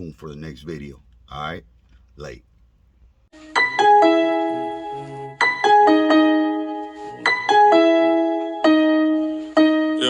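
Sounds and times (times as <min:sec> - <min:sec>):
piano melody: 0:03.3 - 0:10.0.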